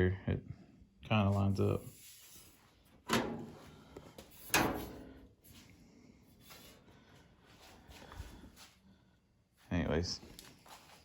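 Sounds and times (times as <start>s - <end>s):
sheet metal clanks: 3.1s - 3.6s, 4.4s - 5.1s.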